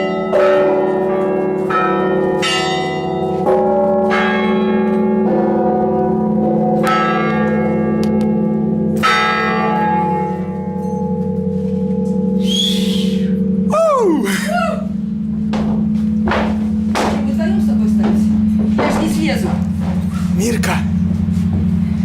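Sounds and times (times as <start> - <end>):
deep bells humming: 0.0 - 22.0
small bells struck: 6.8 - 12.4.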